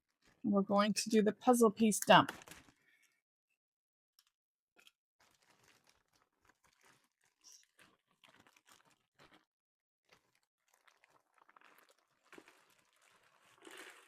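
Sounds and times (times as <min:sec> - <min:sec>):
plastic bag crinkling: 0:02.2 - 0:02.9, 0:05.2 - 0:09.5, 0:10.1 - 0:14.0.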